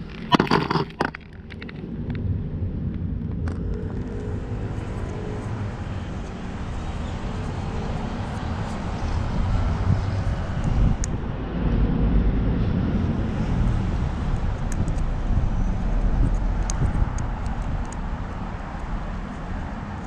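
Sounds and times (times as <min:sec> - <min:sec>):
low rumble: 0:00.0 - 0:20.0
clattering: 0:00.3 - 0:01.4.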